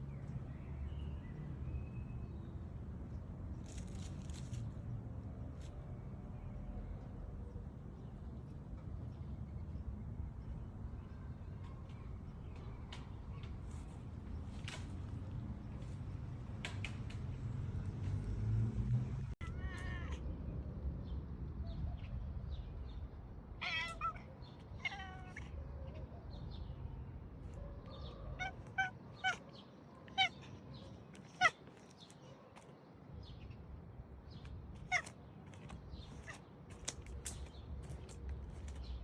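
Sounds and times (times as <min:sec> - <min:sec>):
cat meowing: 0:19.4 - 0:20.2, 0:23.6 - 0:26.0, 0:28.0 - 0:31.6, 0:34.8 - 0:36.4.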